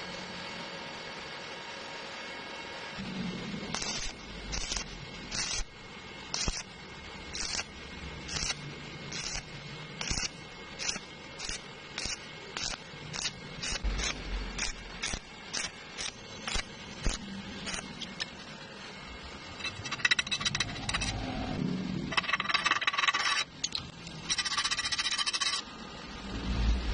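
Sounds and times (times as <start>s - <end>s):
wire brush scratching: 3.7s - 5.7s, 6.3s - 6.7s, 7.3s - 18.0s, 24.2s - 25.6s.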